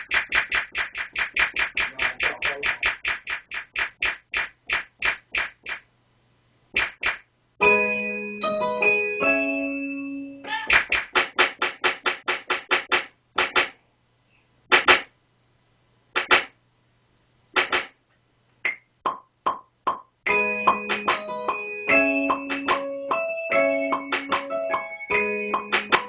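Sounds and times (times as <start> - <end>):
synth keyboard chords: 7.6 - 10.4, 20.3 - 26.0.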